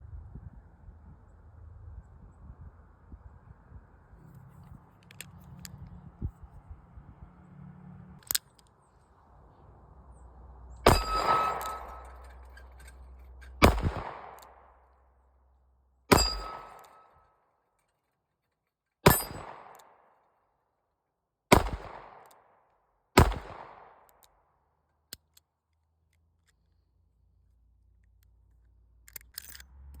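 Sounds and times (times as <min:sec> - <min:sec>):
revolver shots with echo: 0:13.6 - 0:14.4.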